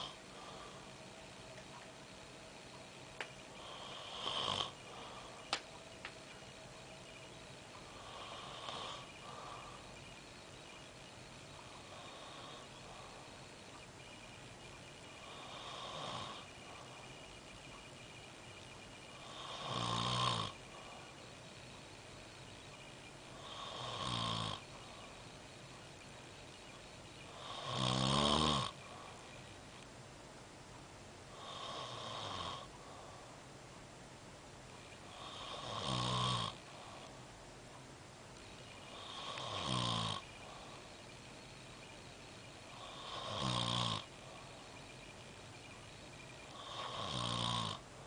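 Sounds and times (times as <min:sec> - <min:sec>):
person snoring loudly: 0:03.6 - 0:05.3, 0:15.2 - 0:16.5, 0:19.2 - 0:20.6, 0:23.4 - 0:24.6, 0:27.4 - 0:28.8, 0:35.2 - 0:36.6, 0:38.9 - 0:40.2, 0:42.8 - 0:44.1, 0:46.6 - 0:47.8.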